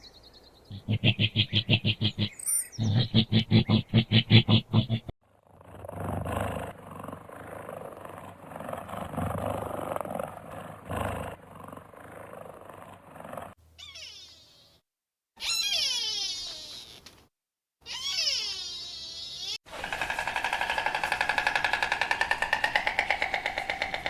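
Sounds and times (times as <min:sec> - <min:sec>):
animal growling: 0:00.7 - 0:13.6, 0:19.7 - 0:24.0.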